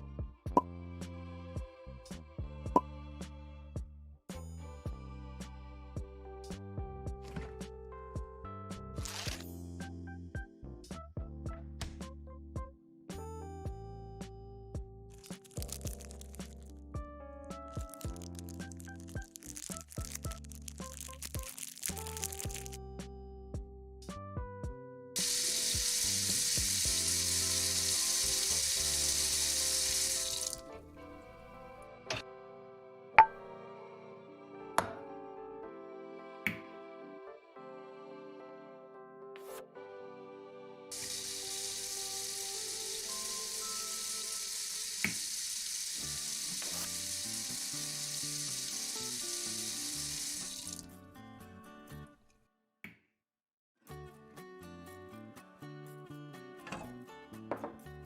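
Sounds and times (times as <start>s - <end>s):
soft background music: 0.0s - 52.1s, 53.9s - 58.0s
loud frying sizzle: 17.8s - 22.7s, 25.2s - 30.6s, 41.0s - 50.8s.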